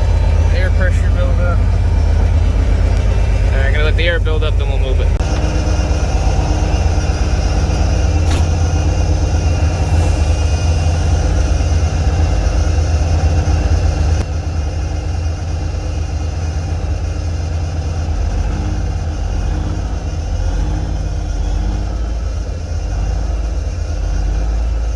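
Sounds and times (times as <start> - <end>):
truck engine idling: 0.0 - 24.9
air brake pressure building: 5.2 - 14.2.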